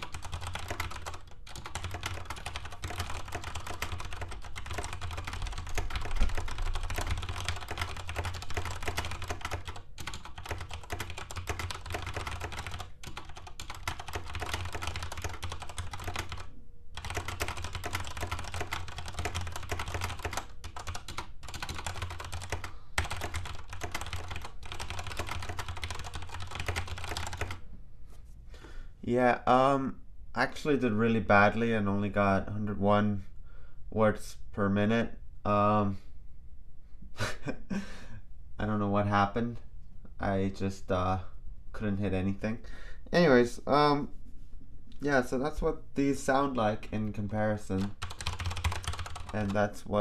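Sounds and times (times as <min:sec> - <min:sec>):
fast typing on mechanical keyboard: 0:00.0 - 0:27.6, 0:47.6 - 0:50.0.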